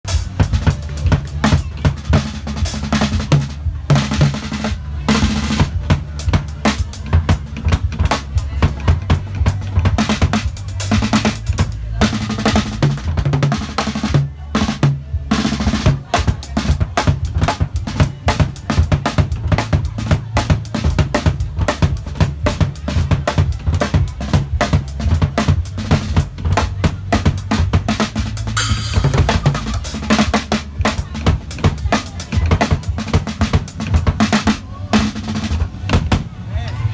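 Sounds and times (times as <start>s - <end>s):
tom drum strokes: 0.1s - 36.3s
snare and tom strikes: 25.9s - 35.2s
snare drum hits: 28.5s - 30.5s
bass drum kicks: 28.5s - 32.9s.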